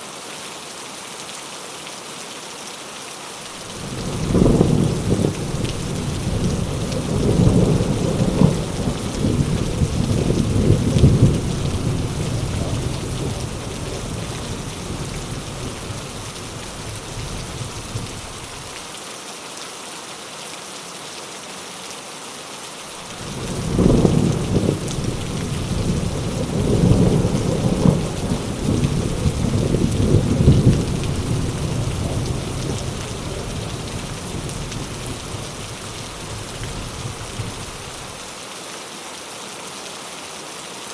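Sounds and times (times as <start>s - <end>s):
heavy rain hissing: 0.0s - 40.1s
rolling thunder: 3.7s - 18.7s, 23.0s - 38.2s.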